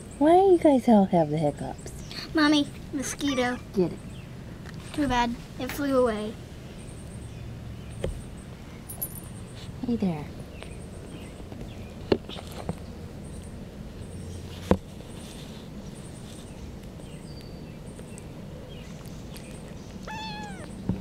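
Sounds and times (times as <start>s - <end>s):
faint background noise: 0.0s - 21.0s
kitten mewing: 20.0s - 20.8s.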